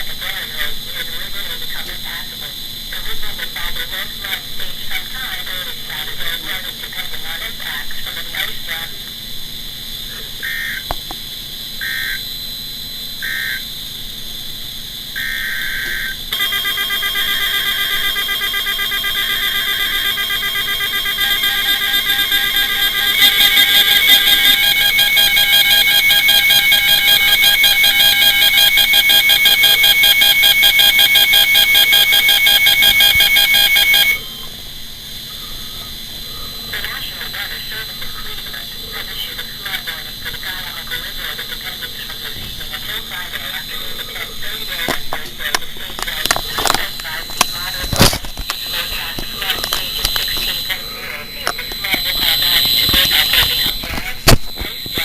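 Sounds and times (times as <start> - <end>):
fast-pulsing electronic alarm: 0.0 - 44.9, 45.9 - 55.0
short high tone bursts: 16.3 - 34.5.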